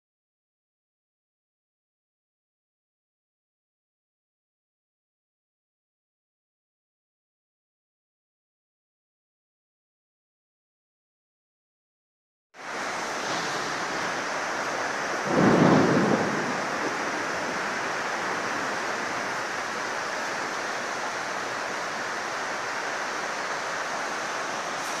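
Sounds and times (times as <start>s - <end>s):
heavy rain and wind: 12.6s - 25.0s
low rumble of thunder: 15.0s - 19.3s.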